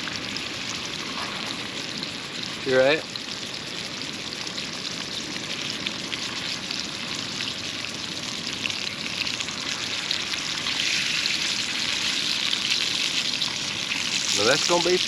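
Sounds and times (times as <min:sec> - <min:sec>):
fish sizzling in hot oil: 0:00.0 - 0:15.0.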